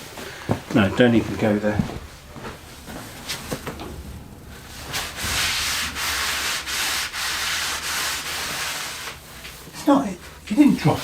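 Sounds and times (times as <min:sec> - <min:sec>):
rubbing noise: 0:01.8 - 0:09.6.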